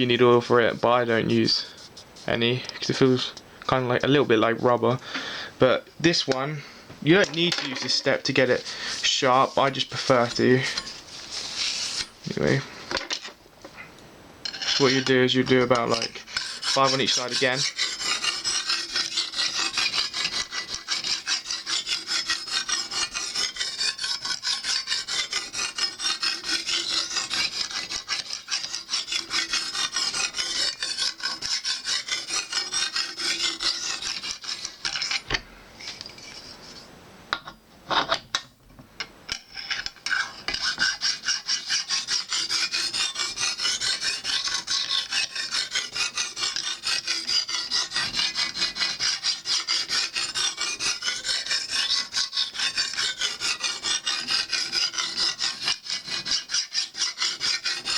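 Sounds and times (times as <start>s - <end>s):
hone rasping on knife blade: 7.2s - 12.2s, 14.5s - 36.6s, 39.3s - 57.9s.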